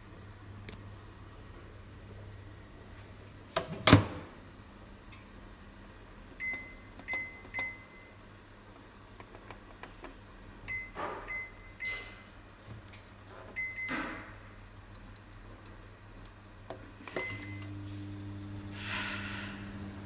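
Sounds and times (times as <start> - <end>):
microwave oven humming: 0.0 - 20.0
microwave keypad beeping: 6.4 - 8.2, 10.6 - 12.3, 13.5 - 14.4, 17.1 - 17.7.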